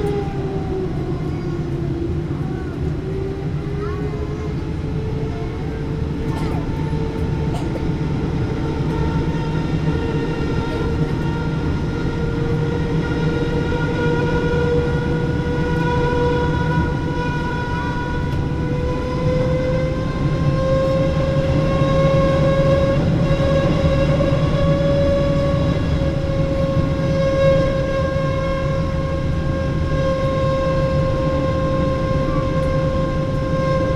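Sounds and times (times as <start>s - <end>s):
aircraft cabin low rumble: 0.0s - 33.9s.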